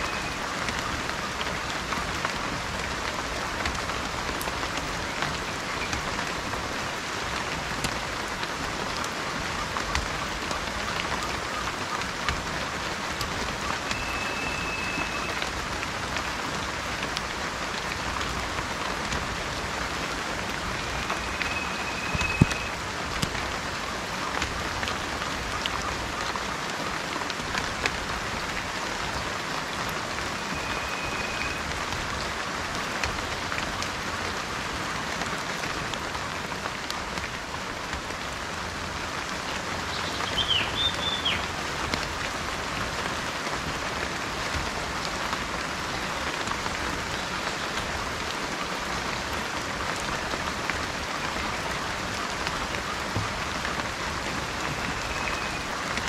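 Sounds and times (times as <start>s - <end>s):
steady rain falling: 0.0s - 56.0s
bird chirp: 39.9s - 41.4s.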